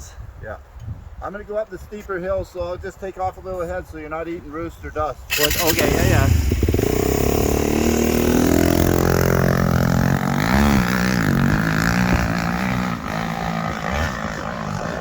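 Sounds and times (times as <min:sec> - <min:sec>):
dirt bike engine running: 0:05.3 - 0:15.0.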